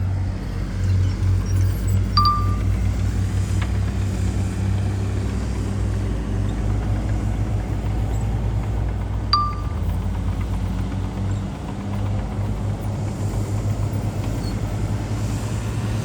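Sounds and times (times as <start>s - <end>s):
heavy diesel engine running: 0.0s - 16.0s
sharp metallic clinks: 2.2s - 2.8s, 9.4s - 9.9s.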